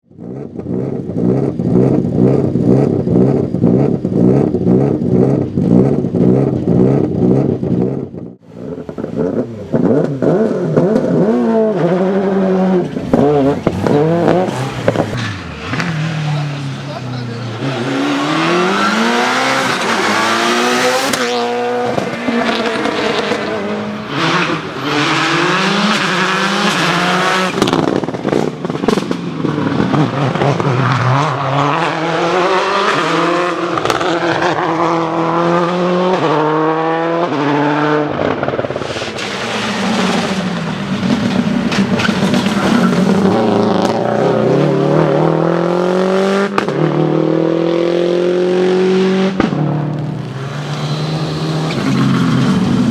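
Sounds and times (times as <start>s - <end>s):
rally car engines accelerating: 0.1s - 52.9s.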